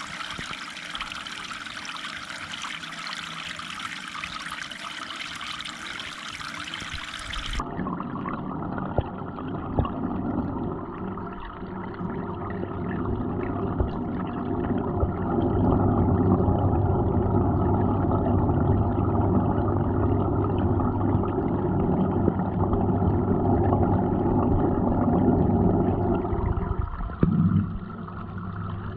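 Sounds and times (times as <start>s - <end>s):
water splashing into pond: 0.0s - 7.6s
pump humming: 0.0s - 28.9s.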